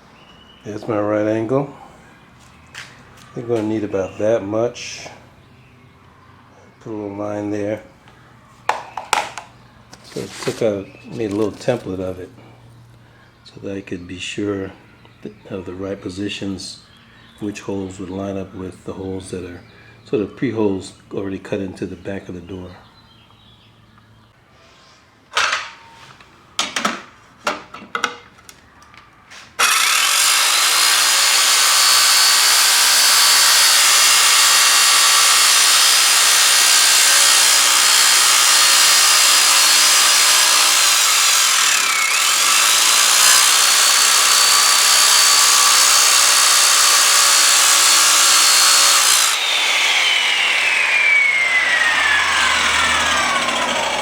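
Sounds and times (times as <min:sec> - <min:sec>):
electric saw cutting metal: 0:10.2 - 0:12.0, 0:29.6 - 0:54.0
saw blade winding down: 0:10.2 - 0:12.1, 0:29.6 - 0:54.0.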